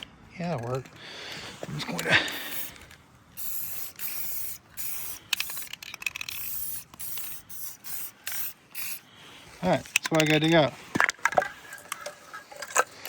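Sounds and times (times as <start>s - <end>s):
spray paint can hissing: 2.2s - 9.0s.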